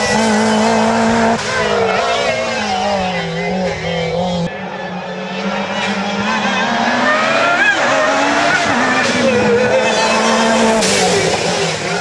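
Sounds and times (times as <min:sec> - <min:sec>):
car engine revving through gears: 0:00.0 - 0:12.0.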